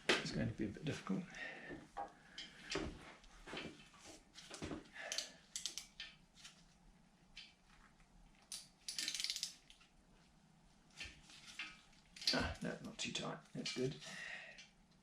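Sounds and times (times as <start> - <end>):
metal tools clicking and knocking: 5.1 - 6.2, 8.4 - 9.8, 11.6 - 12.6.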